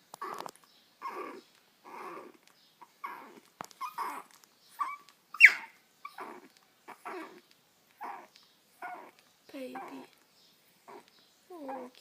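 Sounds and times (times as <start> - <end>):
dog whimpering squeaks: 0.2 - 2.3, 3.0 - 7.4, 8.0 - 9.2, 10.9 - 12.0.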